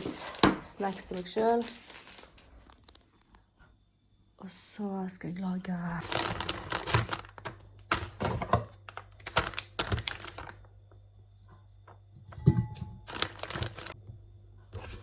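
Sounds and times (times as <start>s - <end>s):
packaging rustling: 0.0s - 3.0s, 5.8s - 10.7s, 13.0s - 14.0s.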